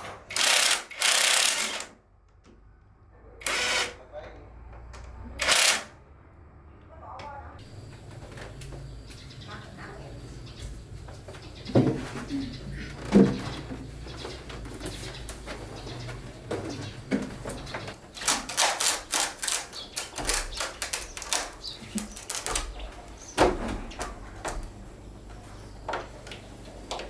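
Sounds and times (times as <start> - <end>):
sharp clicks and knocks: 11.3 - 27.0.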